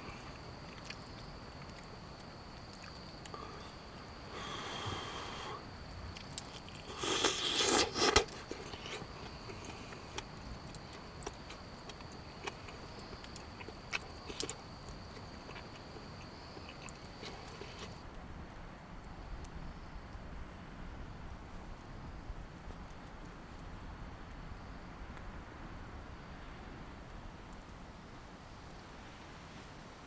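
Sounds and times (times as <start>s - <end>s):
campfire crackling: 0.0s - 18.1s.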